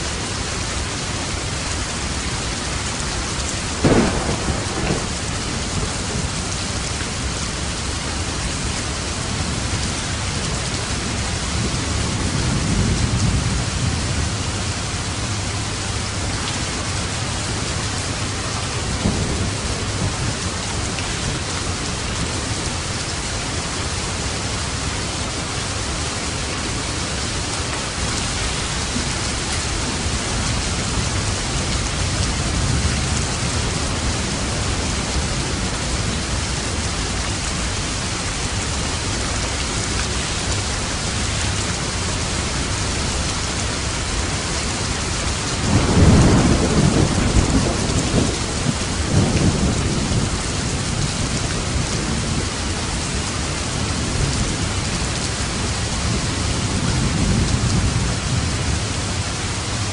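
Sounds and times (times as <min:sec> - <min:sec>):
heavy rain: 0:00.0 - 0:59.9
thunder rumbling: 0:03.6 - 0:22.9, 0:42.2 - 0:52.6.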